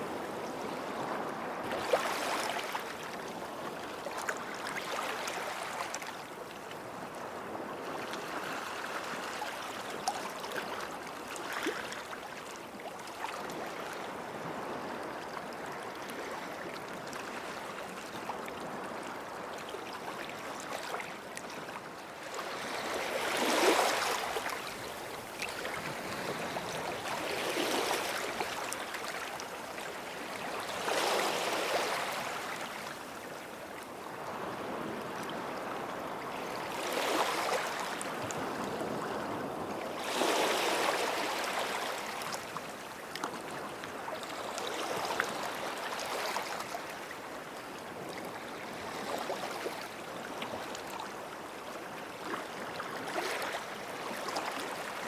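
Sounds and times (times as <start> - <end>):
small waves washing onto shore: 0.0 - 6.2, 22.1 - 51.1.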